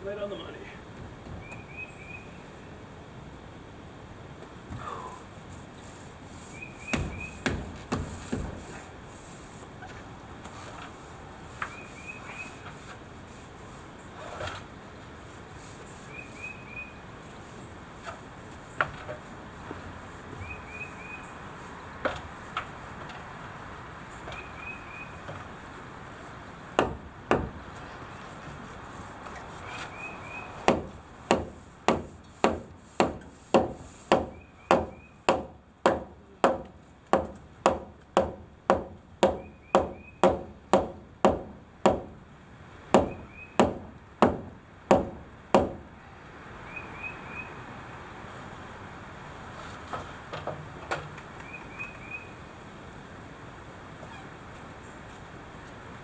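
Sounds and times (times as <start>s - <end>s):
bird chirping: 1.4s - 2.7s, 6.5s - 7.5s, 11.6s - 12.6s, 15.8s - 17.8s, 20.4s - 21.6s, 24.1s - 25.3s, 29.6s - 30.6s, 34.3s - 35.3s, 39.4s - 40.2s, 43.0s - 43.6s, 46.6s - 47.7s, 51.4s - 52.5s
hammer blows on wood: 6.4s - 8.9s, 26.7s - 27.7s, 29.8s - 42.2s, 42.9s - 45.9s
lumber knocking: 6.8s - 8.8s, 26.8s - 27.8s, 30.6s - 42.2s, 42.9s - 45.9s.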